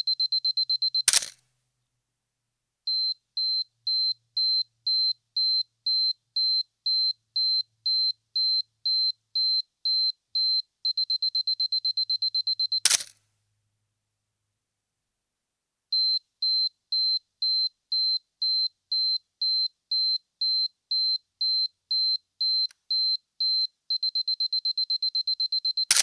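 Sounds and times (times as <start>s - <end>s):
camera self-timer beeping: 24.1s - 26.0s.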